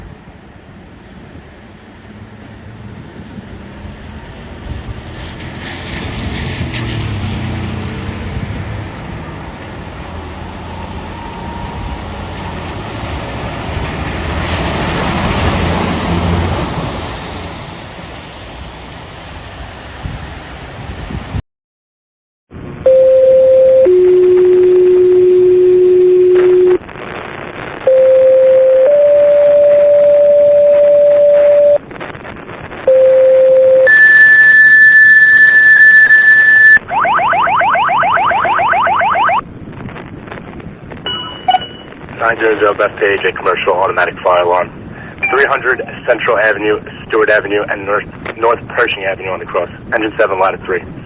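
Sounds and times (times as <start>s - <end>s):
fire truck driving past: 0.1s - 21.4s
dispatch alert tones on radio: 22.9s - 26.8s, 27.9s - 31.8s, 32.9s - 39.4s, 41.1s - 50.8s.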